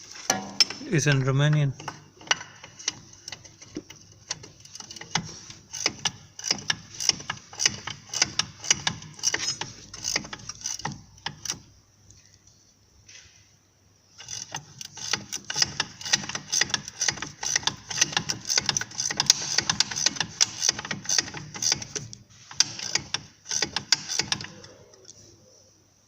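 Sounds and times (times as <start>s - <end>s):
ratchet wrench clicking: 1.8s - 11.7s, 14.2s - 24.8s.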